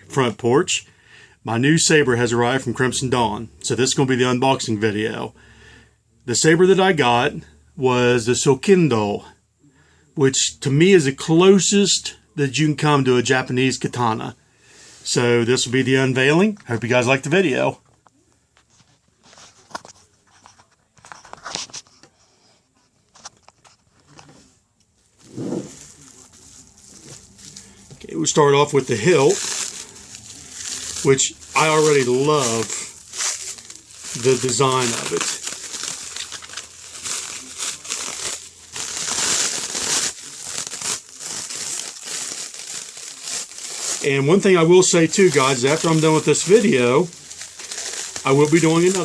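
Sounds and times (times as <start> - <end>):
packaging rustling and crinkling: 25.1 - 49.0.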